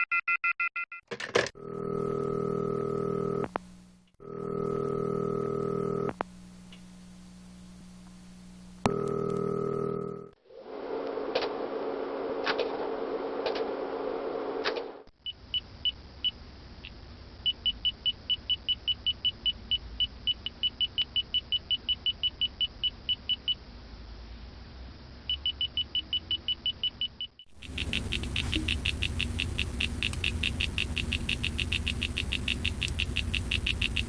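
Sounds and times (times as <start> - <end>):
radar detector beeping: 25.3 - 34.0
slide projector fan hum: 27.6 - 34.0.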